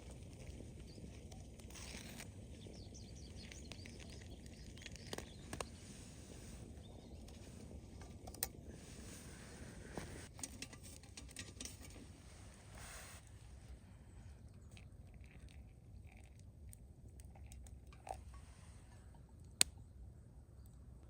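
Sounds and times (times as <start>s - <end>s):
campfire crackling: 0.0s - 10.3s.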